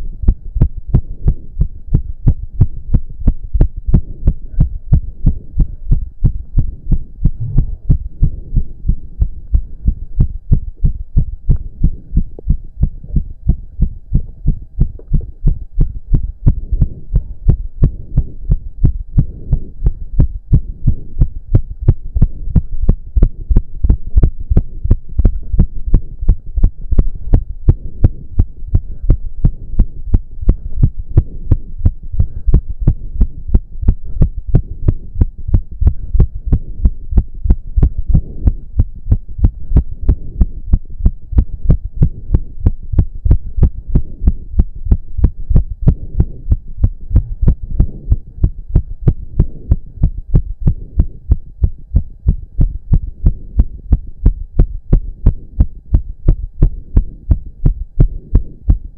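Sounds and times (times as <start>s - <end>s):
heart pounding fast: 0.0s - 58.9s
heavy breathing: 32.1s - 33.1s.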